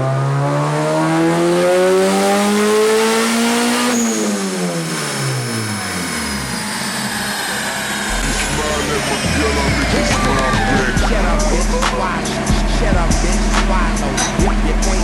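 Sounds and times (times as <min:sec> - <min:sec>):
turbocharged car engine revving: 0:00.0 - 0:15.0
faint high whine: 0:06.6 - 0:12.2.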